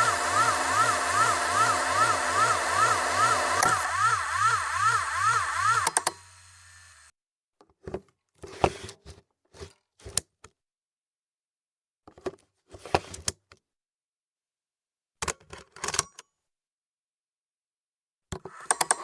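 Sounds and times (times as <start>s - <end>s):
tape mechanism clicking and clunking: 0.0s - 6.3s.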